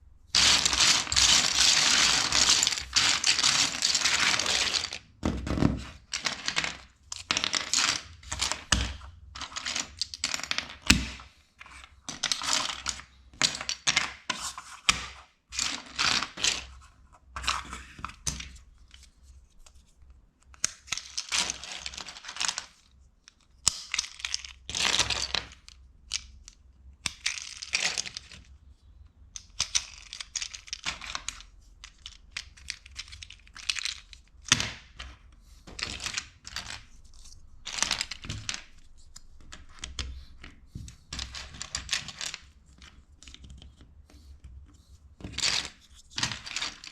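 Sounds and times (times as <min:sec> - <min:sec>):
crinkling plastic: 0:00.4 - 0:05.0
plastic bricks clattering: 0:00.4 - 0:11.3, 0:12.1 - 0:16.7, 0:20.6 - 0:22.8, 0:23.7 - 0:26.3, 0:27.1 - 0:28.4, 0:29.4 - 0:38.9, 0:39.5 - 0:43.8, 0:45.2 - 0:46.9.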